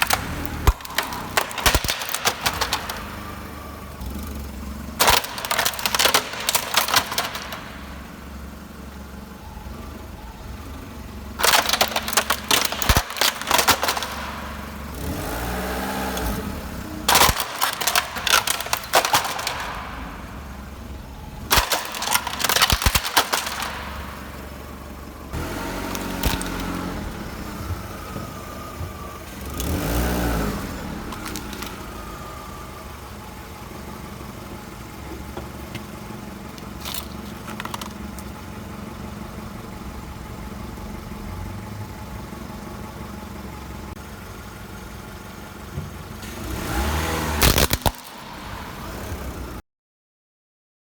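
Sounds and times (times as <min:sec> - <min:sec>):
tyres crushing brittle objects: 0:00.0 - 0:03.8, 0:05.0 - 0:08.0, 0:11.4 - 0:16.4, 0:17.1 - 0:24.6, 0:25.3 - 0:32.2, 0:36.5 - 0:38.4, 0:46.4 - 0:48.6
car engine running: 0:00.0 - 0:49.6.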